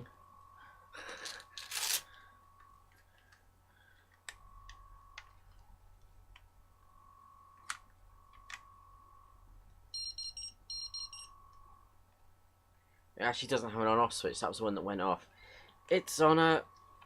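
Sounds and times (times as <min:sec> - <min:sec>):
electronic toy beeps: 0:10.0 - 0:11.4.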